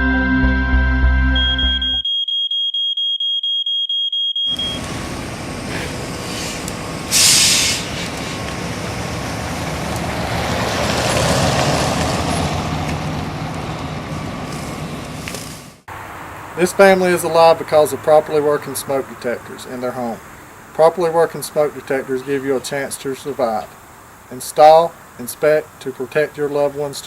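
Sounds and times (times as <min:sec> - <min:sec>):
smoke alarm beeping: 0:01.3 - 0:04.9
truck engine running: 0:04.5 - 0:18.3
air brakes hiss: 0:05.6 - 0:08.4.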